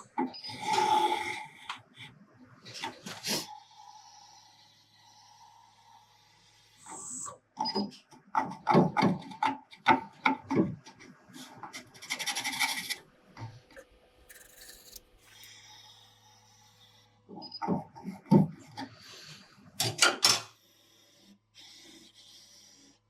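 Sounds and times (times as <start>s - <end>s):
rapid hissy scratching: 14.2s - 15.5s.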